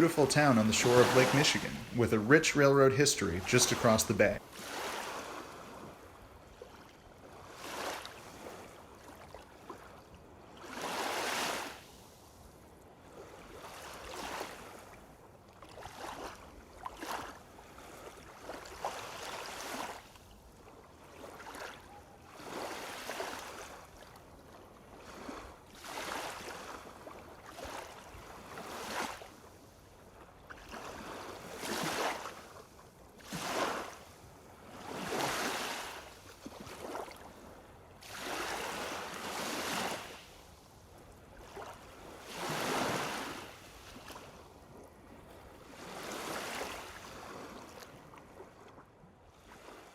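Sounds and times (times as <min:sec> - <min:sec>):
lake waves washing onto shore: 0:00.0 - 0:06.1, 0:10.6 - 0:12.4, 0:21.1 - 0:24.2, 0:24.9 - 0:29.7, 0:30.6 - 0:37.3, 0:38.0 - 0:40.6, 0:41.4 - 0:44.4, 0:45.7 - 0:48.0.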